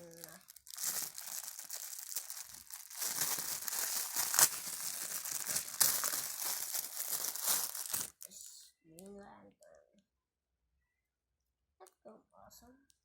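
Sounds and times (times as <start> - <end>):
packaging crinkling and rustling: 0.0 - 8.3
packaging ripping: 0.0 - 8.3.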